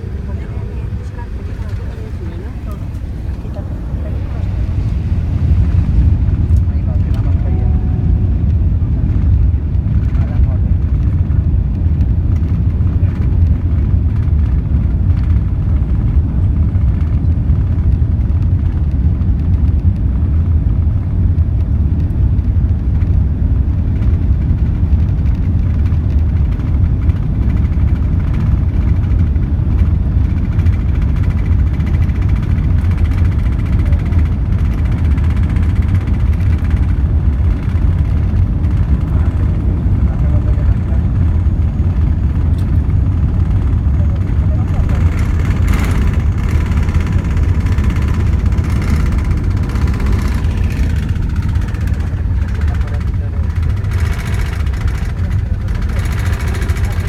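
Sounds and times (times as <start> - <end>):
faint high whine: 0.0 - 9.1
jet engine and airflow rumble: 0.0 - 57.0.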